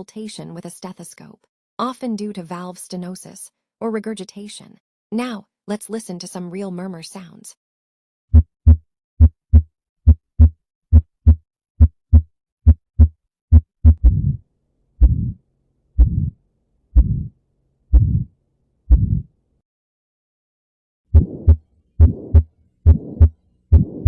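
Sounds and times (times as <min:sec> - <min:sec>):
heartbeat through stethoscope: 0:08.3 - 0:14.4, 0:15.0 - 0:15.4, 0:16.0 - 0:16.4, 0:17.0 - 0:17.3, 0:17.9 - 0:18.3, 0:18.9 - 0:19.3, 0:21.1 - 0:24.0
noisy heart murmur: 0:08.3 - 0:14.4, 0:15.0 - 0:15.4, 0:16.0 - 0:16.4, 0:17.0 - 0:17.3, 0:17.9 - 0:18.3, 0:18.9 - 0:19.3, 0:21.1 - 0:24.0.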